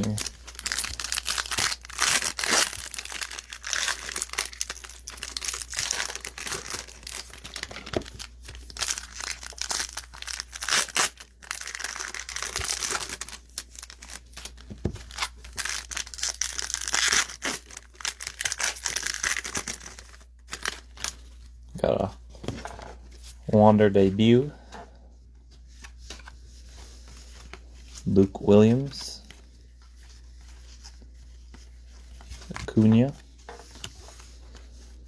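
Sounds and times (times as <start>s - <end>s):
card pack wrappers crinkling: 0.0s - 22.0s.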